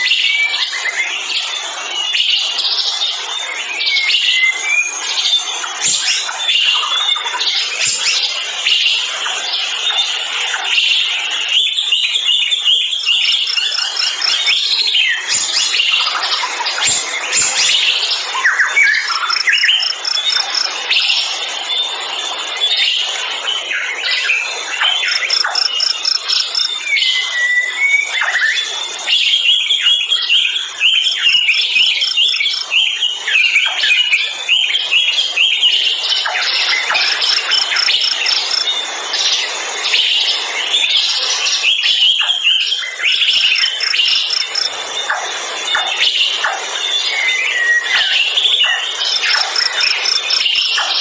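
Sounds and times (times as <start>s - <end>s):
forest birds chirping and whistling: 0.0s - 51.0s
high insect drone: 4.7s - 27.4s, 28.2s - 51.0s
high rapid bird trill: 12.9s - 21.4s, 24.3s - 27.2s, 30.8s - 34.1s, 34.9s - 40.3s, 41.3s - 51.0s.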